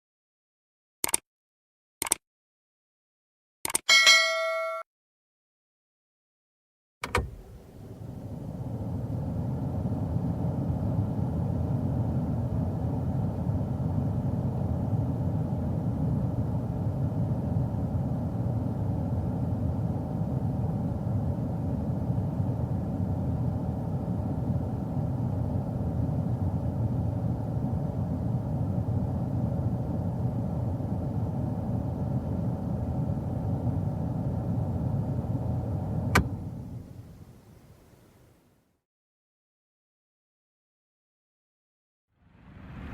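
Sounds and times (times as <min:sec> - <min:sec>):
sharp click: 0:01.0 - 0:01.2, 0:03.6 - 0:04.0
car engine running: 0:07.1 - 0:37.4.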